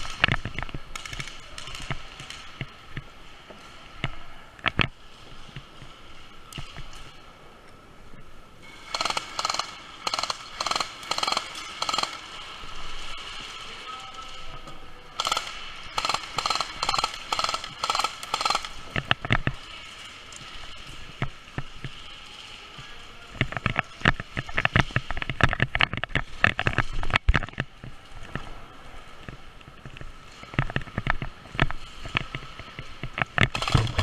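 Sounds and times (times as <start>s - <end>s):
airsoft guns firing rapidly: 8.9s - 12.2s, 15.2s - 18.8s, 33.5s - 34.0s.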